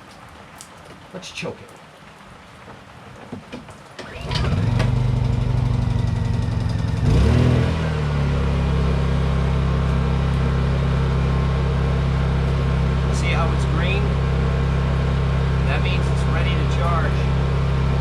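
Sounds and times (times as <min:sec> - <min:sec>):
generator engine starting and running: 0:04.0 - 0:18.0.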